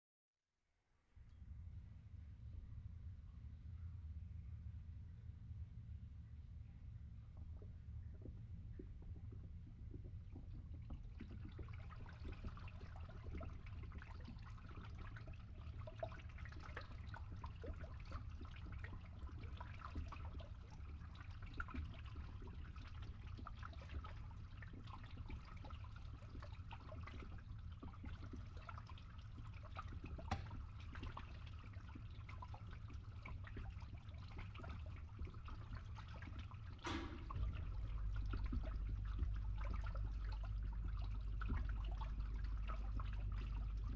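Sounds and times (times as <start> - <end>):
water draining through a pipe: 7.3 - 43.9
pump humming: 34.6 - 43.9.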